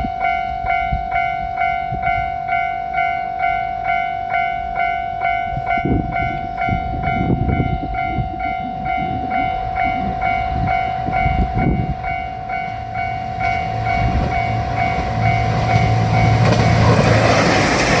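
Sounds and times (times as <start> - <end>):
train engine drone: 0.0 - 18.0
level-crossing bell ringing: 0.1 - 16.4
train wheels clattering: 11.6 - 18.0.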